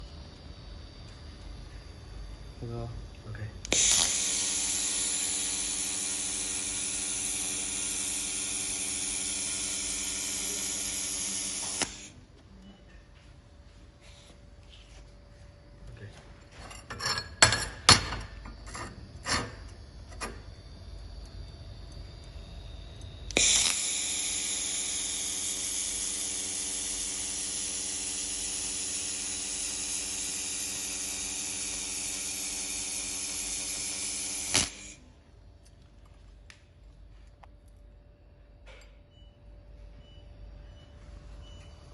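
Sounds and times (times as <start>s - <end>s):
laser welder hissing: 2.7s - 12.2s, 22.9s - 35.1s.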